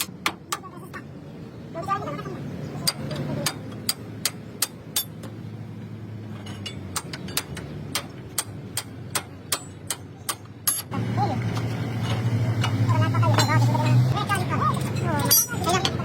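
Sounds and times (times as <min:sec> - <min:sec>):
hammer striking metal: 0:06.4 - 0:11.0.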